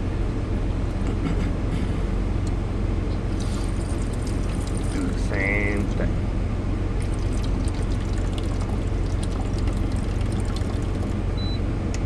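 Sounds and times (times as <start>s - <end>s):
low machine hum: 0.0s - 12.0s
water trickling into ice maker: 3.4s - 5.9s, 7.0s - 11.3s.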